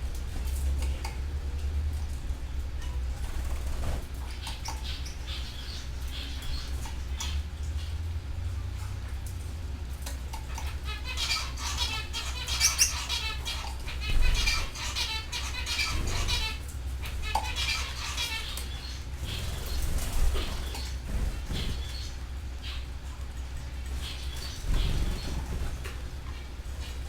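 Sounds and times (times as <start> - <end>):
steady low hum: 0.0 - 27.0
canaries chirping and trilling: 0.2 - 27.0
wing flutters: 3.0 - 4.8, 12.6 - 22.6, 23.6 - 27.0.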